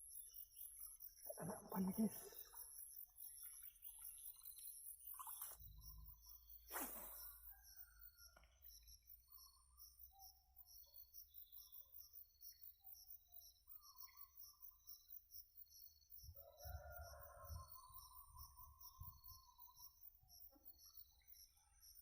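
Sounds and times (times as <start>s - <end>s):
insects chirping: 0.0s - 22.0s
rooster crowing: 16.4s - 17.9s.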